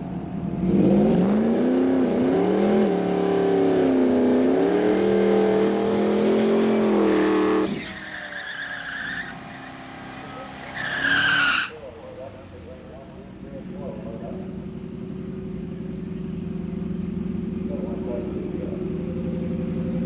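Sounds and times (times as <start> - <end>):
cars accelerating at full throttle: 0.4 - 11.7.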